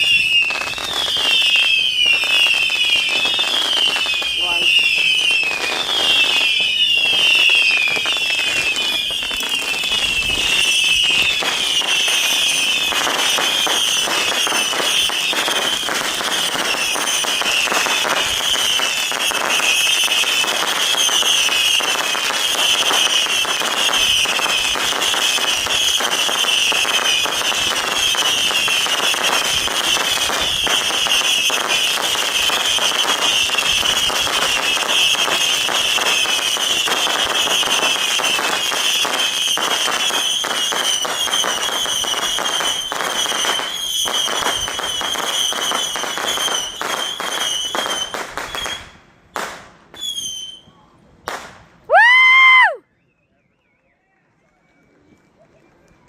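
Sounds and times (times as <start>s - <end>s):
fireworks crackling and popping: 0.0s - 50.6s, 51.2s - 52.8s.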